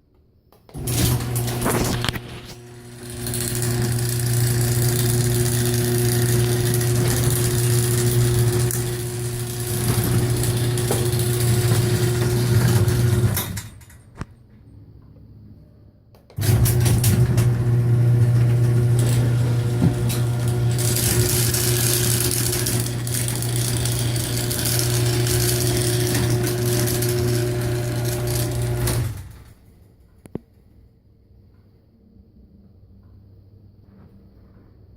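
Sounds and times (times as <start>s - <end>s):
garage door opener motor hum: 0.7s - 13.8s, 16.3s - 29.8s.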